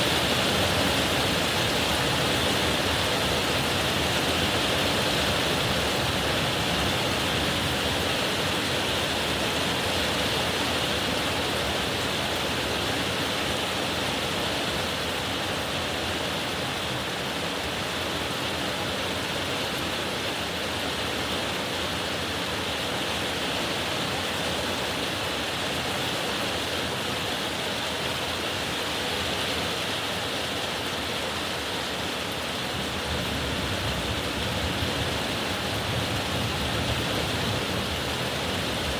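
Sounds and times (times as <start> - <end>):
heavy rain pouring: 0.0 - 38.9.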